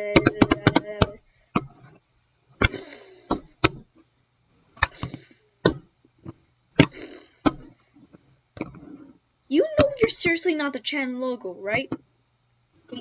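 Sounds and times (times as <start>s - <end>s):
plastic cubes clacking: 0.0s - 2.0s, 2.6s - 4.0s.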